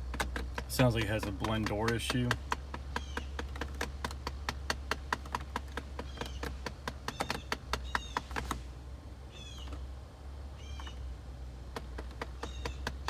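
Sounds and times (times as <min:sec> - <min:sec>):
actuator clicking rapidly: 0:00.0 - 0:08.6, 0:11.7 - 0:13.0.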